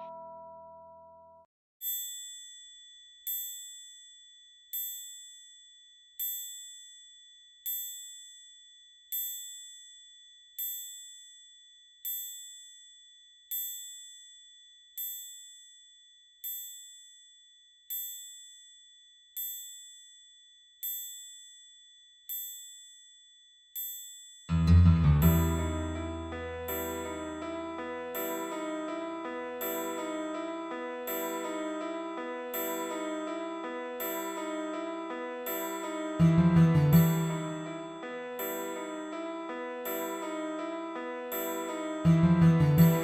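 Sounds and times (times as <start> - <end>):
high bell-like ding: 0.0 - 0.8, 35.5 - 39.0, 41.4 - 43.0.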